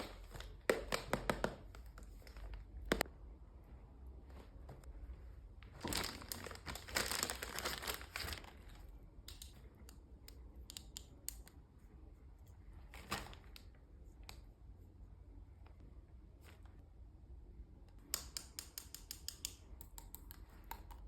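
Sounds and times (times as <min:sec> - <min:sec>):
packaging crinkling: 0:05.7 - 0:08.8.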